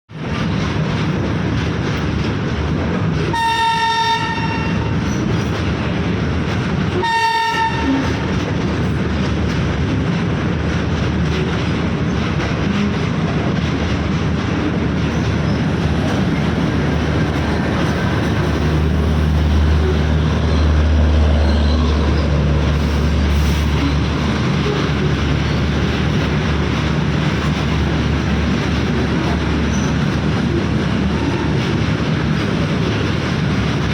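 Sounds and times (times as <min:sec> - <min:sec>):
train rumbling and rattling: 0:00.1 - 0:33.9
locomotive horn blasts: 0:03.3 - 0:04.9, 0:07.0 - 0:08.2.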